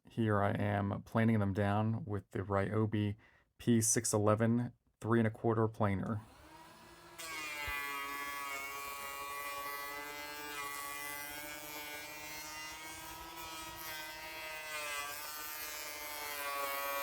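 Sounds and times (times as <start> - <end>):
power planer whining: 6.2 - 17.0.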